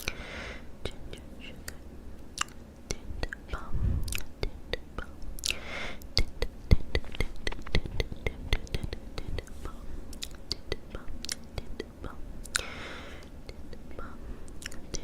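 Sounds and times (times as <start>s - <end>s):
lip smacks: 2.4s - 3.5s, 4.1s - 4.4s, 5.3s - 9.5s, 12.4s - 12.7s, 14.5s - 15.0s
tongue clicks: 2.4s - 9.5s, 10.1s - 12.7s, 13.4s - 15.0s
breathy whisper: 5.0s - 15.0s.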